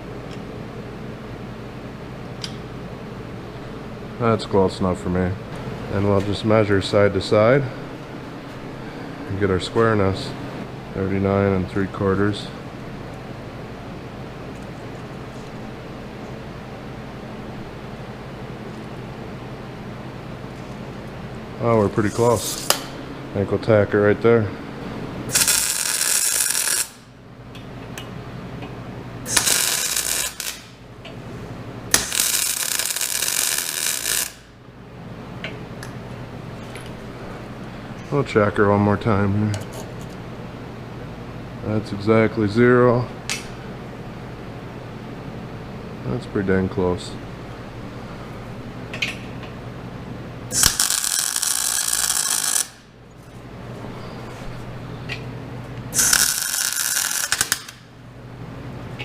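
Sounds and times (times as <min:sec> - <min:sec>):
low steady hum: 0:00.0 - 0:59.0
welder sputtering and crackling: 0:25.3 - 0:27.1, 0:29.2 - 0:30.8, 0:31.9 - 0:34.6, 0:50.5 - 0:52.9, 0:55.8 - 0:57.9.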